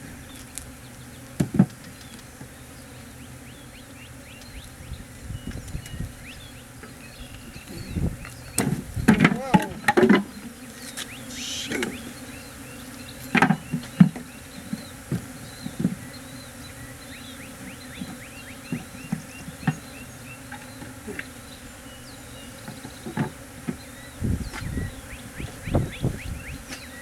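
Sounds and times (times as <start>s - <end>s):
honey bees buzzing: 0.0s - 27.0s
wooden hive frames knocking and creaking: 7.6s - 12.2s, 13.2s - 16.2s, 22.6s - 26.9s.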